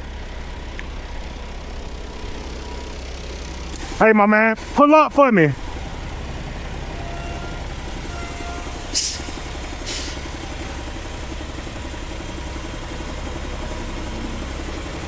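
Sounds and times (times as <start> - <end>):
diesel engine running: 0.0 - 15.0
air brake hisses: 7.3 - 10.4.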